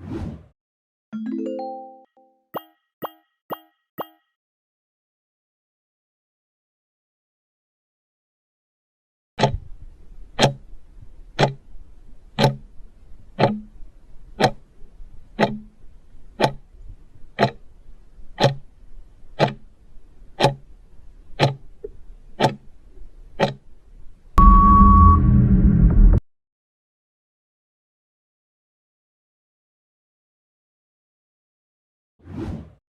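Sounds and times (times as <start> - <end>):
timer ticking: 2.5 - 4.3, 9.4 - 22.8, 23.4 - 23.7
steady beep: 2.6 - 4.2, 24.4 - 25.6.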